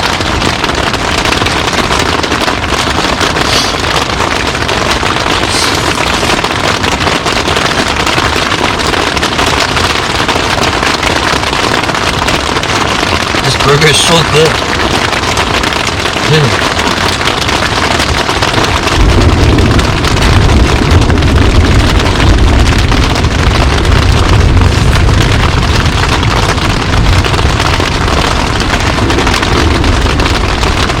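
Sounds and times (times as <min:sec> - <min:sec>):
loud hiss of rushing water: 0:03.4 - 0:03.9, 0:05.4 - 0:06.3
heavy low rumble: 0:18.8 - 0:31.0.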